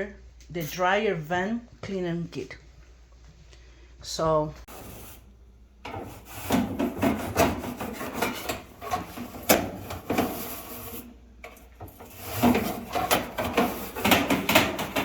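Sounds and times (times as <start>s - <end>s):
vent ducting scraped: 4.7s - 15.0s.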